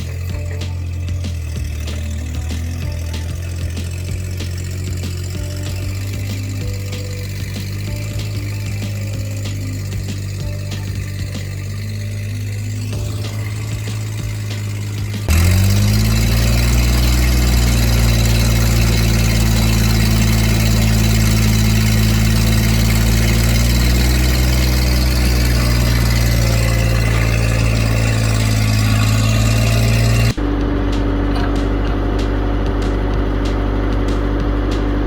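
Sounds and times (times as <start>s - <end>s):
engine running steadily: 0.0s - 35.0s.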